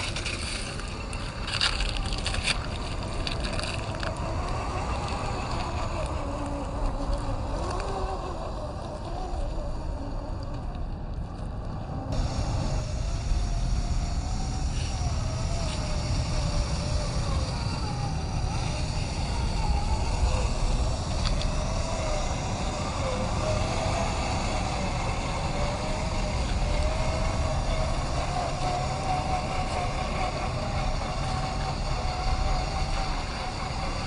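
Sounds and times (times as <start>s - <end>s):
low rumble: 0.0s - 34.0s
electric motor whining: 12.1s - 34.0s.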